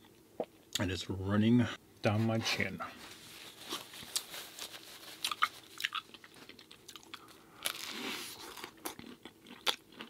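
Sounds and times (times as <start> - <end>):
person chewing food: 5.2 - 10.0.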